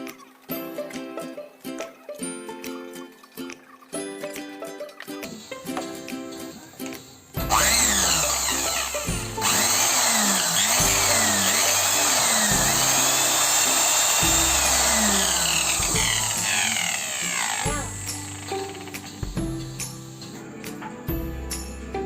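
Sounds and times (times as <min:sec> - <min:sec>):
background music: 0:00.0 - 0:22.0
power tool motor running: 0:07.4 - 0:19.4.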